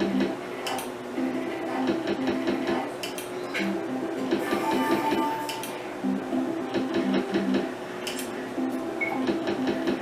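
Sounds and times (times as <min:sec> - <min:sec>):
slot machine game music: 0:03.6 - 0:07.6.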